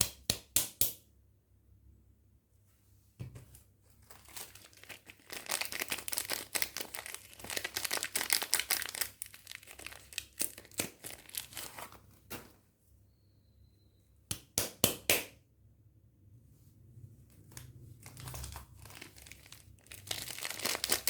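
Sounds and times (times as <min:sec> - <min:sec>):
packaging crinkling and tearing: 0:04.0 - 0:12.1, 0:18.0 - 0:21.0.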